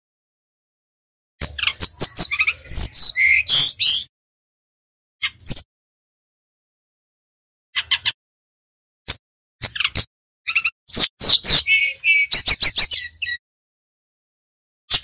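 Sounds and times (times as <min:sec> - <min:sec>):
bird chirping and whistling: 0:01.4 - 0:04.1, 0:05.2 - 0:05.7, 0:09.6 - 0:13.4.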